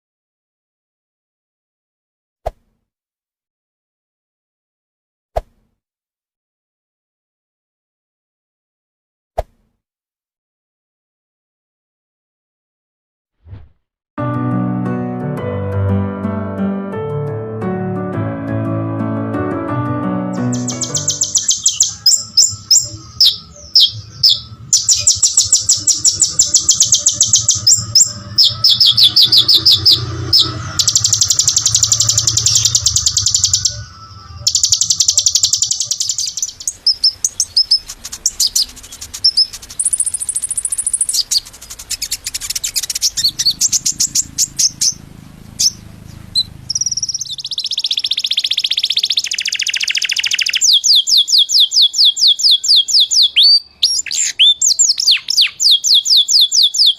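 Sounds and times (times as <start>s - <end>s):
songbird trilling: 20.4s - 56.9s.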